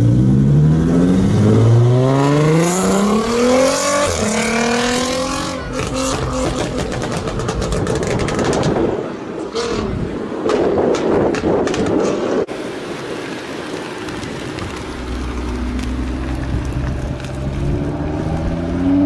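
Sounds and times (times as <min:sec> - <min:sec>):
car engine accelerating: 0:00.0 - 0:09.0, 0:14.1 - 0:19.0
exhaust pops and crackles: 0:02.5 - 0:09.0, 0:09.6 - 0:19.0.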